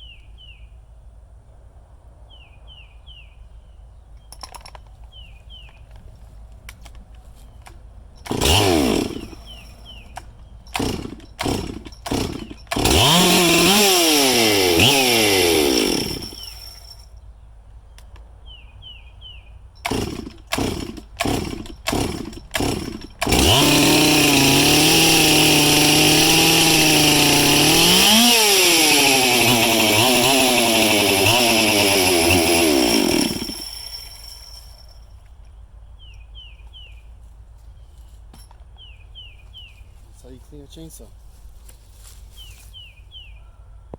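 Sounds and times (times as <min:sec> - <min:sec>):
chainsaw pull-start cord: 0:07.6 - 0:17.0, 0:19.8 - 0:35.0
chainsaw engine running and revving: 0:08.3 - 0:10.0, 0:10.8 - 0:16.8, 0:19.9 - 0:34.6.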